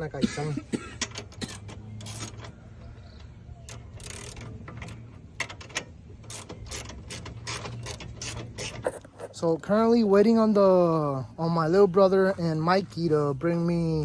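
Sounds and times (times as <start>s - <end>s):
ratchet wrench clicking: 3.7s - 8.8s.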